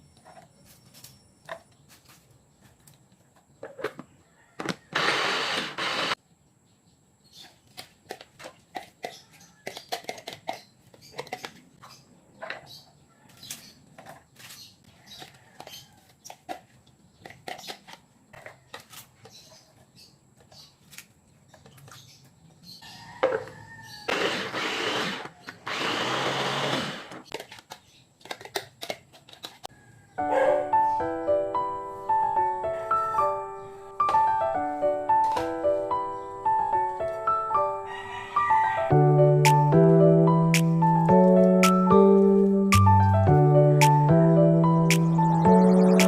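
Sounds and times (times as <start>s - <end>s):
food processor whirring: 4.9s - 6.2s, 24.1s - 27.2s
sharp clicks and taps: 39.4s - 39.7s, 40.5s - 41.9s, 42.7s - 43.1s, 43.8s - 44.1s, 44.9s - 45.3s.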